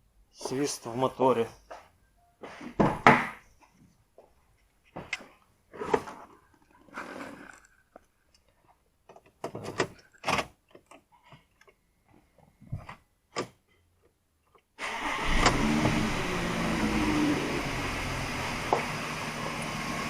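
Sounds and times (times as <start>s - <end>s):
car engine starting and running: 14.8s - 20.0s.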